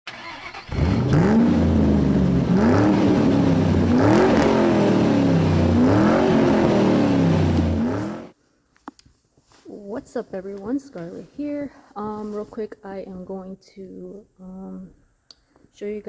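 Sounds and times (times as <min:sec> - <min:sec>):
car engine revving: 0:00.1 - 0:08.3.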